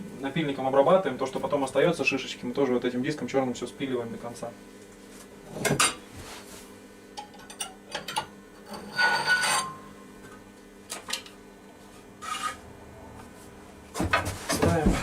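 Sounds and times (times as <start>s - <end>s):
metal scraping with a ring: 8.6s - 9.9s, 12.2s - 12.6s.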